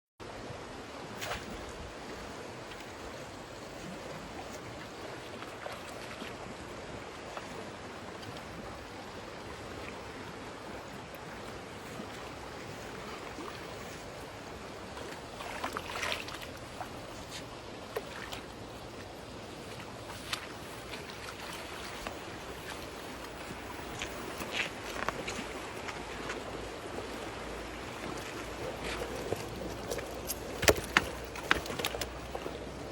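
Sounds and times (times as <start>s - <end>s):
steady water noise: 0.2s - 32.9s
sharp water splashes: 15.2s - 17.1s.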